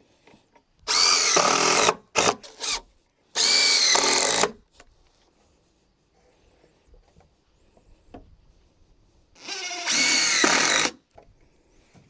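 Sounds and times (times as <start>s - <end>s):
power drill driving screws: 0.9s - 2.8s, 3.4s - 4.6s, 9.4s - 11.0s.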